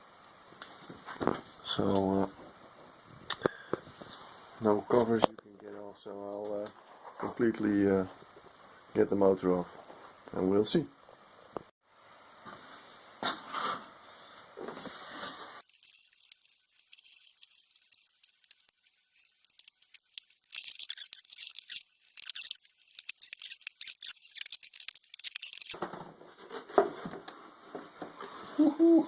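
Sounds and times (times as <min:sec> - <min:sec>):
hand tools and metal parts rattling: 0:15.6 - 0:25.8.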